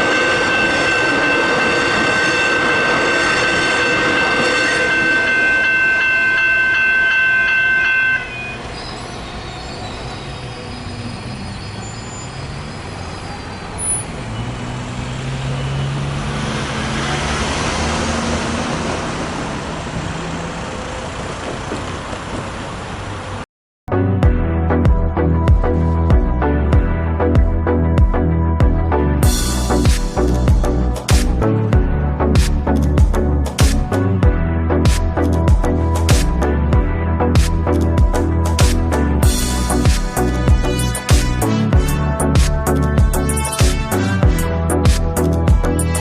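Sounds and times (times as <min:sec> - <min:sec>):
level crossing bells ringing: 0:00.0 - 0:08.8
passing train rumble: 0:00.0 - 0:23.4, 0:28.8 - 0:46.0
music: 0:23.9 - 0:46.0.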